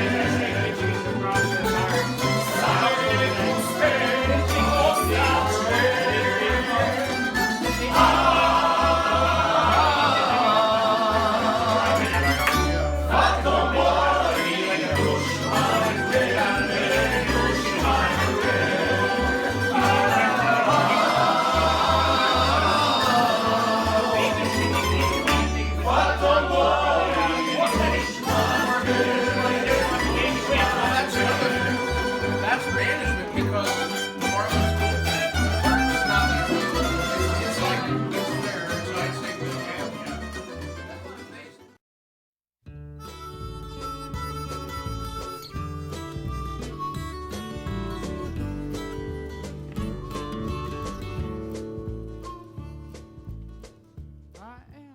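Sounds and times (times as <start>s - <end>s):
people singing: 0.0s - 33.6s, 35.2s - 39.7s
bass line: 0.0s - 40.8s, 43.0s - 54.4s
plucked strings melody: 0.0s - 41.7s.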